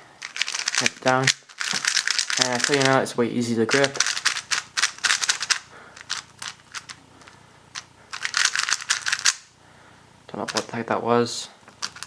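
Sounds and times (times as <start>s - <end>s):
plastic puzzle cube clicking: 0.2s - 2.9s, 3.7s - 9.5s, 11.7s - 12.0s.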